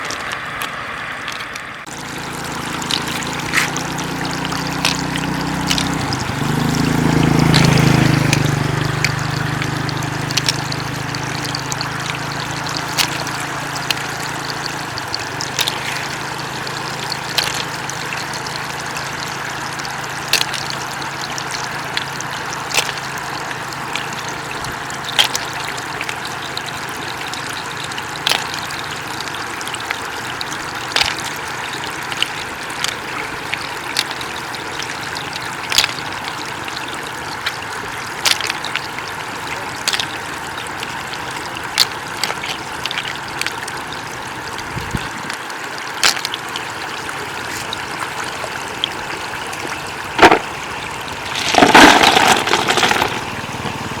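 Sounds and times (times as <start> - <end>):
floodwater flowing and trickling: 0.0 - 54.0
sharp ticks: 1.3 - 16.2.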